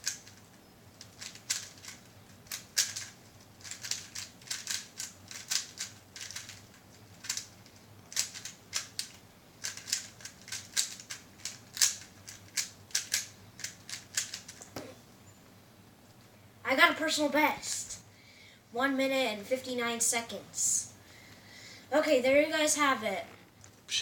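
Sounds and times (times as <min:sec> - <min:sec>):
puzzle cube plastic clicks: 0:00.0 - 0:14.8.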